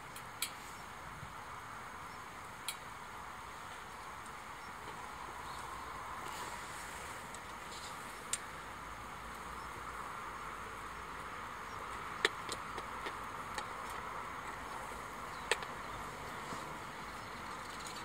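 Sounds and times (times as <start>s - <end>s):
burning pine cones crackling: 2.3s - 18.0s
fire hissing: 5.6s - 9.6s.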